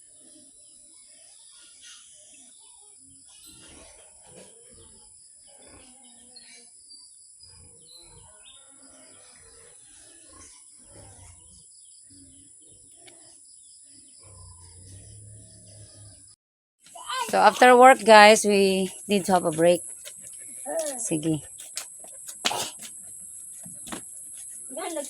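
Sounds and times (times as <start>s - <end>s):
birds chirping: 17.0s - 25.0s.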